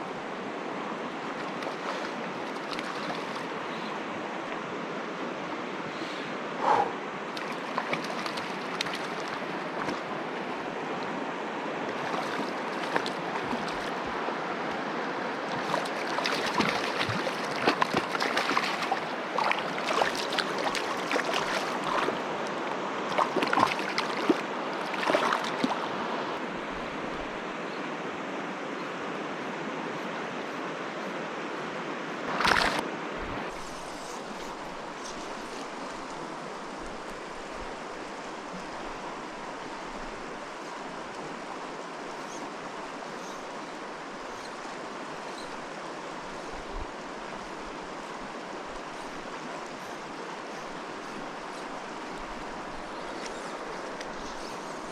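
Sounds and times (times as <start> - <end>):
mountain stream water rushing: 0.0 - 54.9
small clicks and splashes: 7.4 - 10.0, 12.0 - 13.9, 15.5 - 22.2, 23.1 - 25.8.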